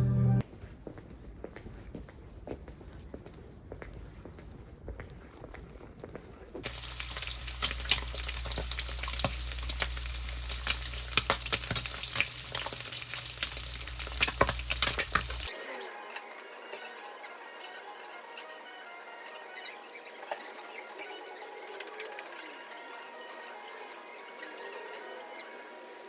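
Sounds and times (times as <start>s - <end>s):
food frying in a pan: 6.6s - 17.8s.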